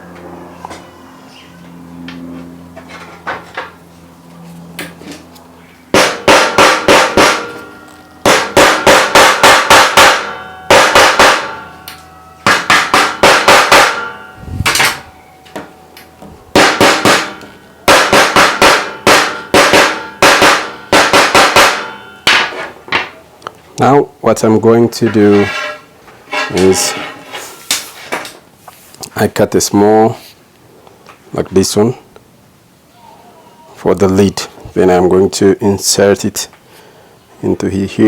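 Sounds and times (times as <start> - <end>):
hammer striking metal: 5.9 - 23.1.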